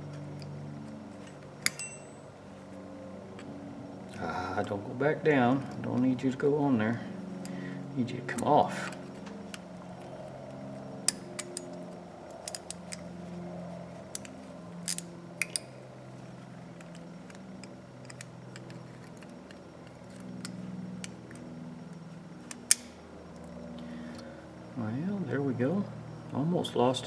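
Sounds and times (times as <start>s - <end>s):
metal tools clicking and scraping: 0.0s - 0.6s, 1.2s - 2.3s, 8.3s - 13.2s, 14.0s - 15.8s, 16.7s - 23.0s
steady low hum: 0.0s - 27.0s.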